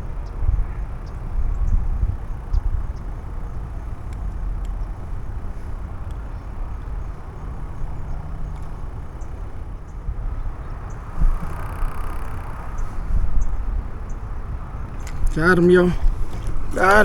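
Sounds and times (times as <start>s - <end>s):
wind buffeting microphone: 0.0s - 17.0s
faint high ticks: 4.0s - 4.9s, 6.0s - 6.2s, 8.1s - 9.3s.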